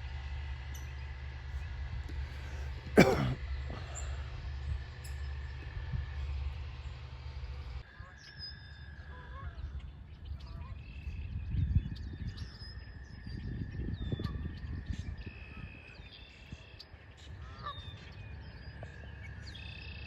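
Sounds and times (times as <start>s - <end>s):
birds calling and singing: 0.0s - 20.0s
low swooping bird calls: 7.8s - 20.0s.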